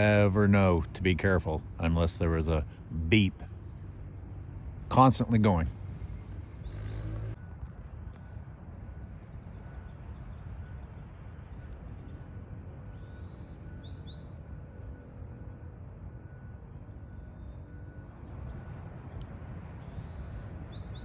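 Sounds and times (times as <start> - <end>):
birds chirping: 0.0 - 7.4, 8.2 - 21.0
reversing alarm beeping: 9.6 - 21.0.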